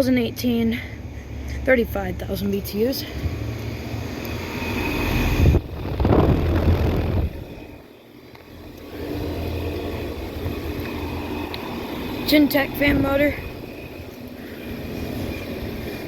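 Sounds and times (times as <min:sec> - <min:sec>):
air conditioner units humming: 0:00.0 - 0:16.0
loud rush of air: 0:03.0 - 0:07.9.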